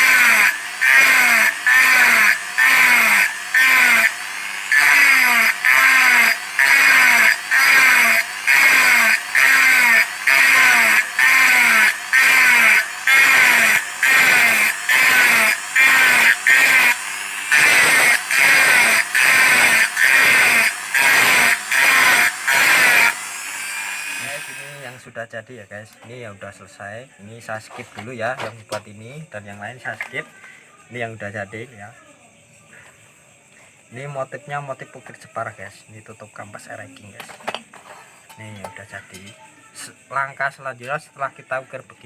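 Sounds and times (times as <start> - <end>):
power engraving tool on metal: 0.0 - 25.1.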